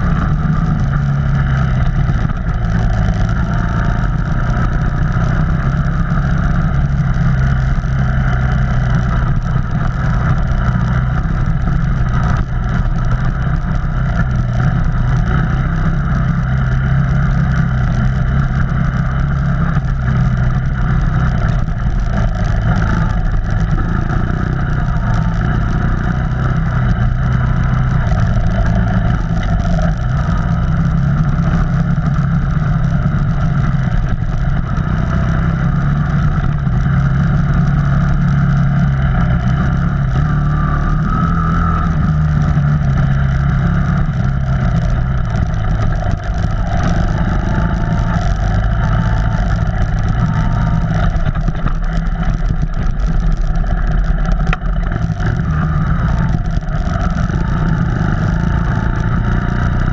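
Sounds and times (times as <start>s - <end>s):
off-road vehicle engine running: 0.0s - 59.9s.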